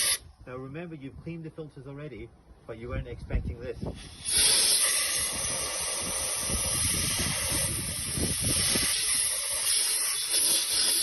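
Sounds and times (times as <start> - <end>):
compressed air blow gun hissing: 0.0 - 0.3, 3.8 - 11.0.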